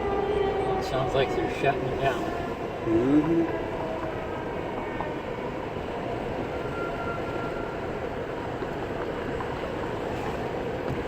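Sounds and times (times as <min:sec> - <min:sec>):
vehicle rumble inside car: 0:00.8 - 0:06.7, 0:07.6 - 0:11.0.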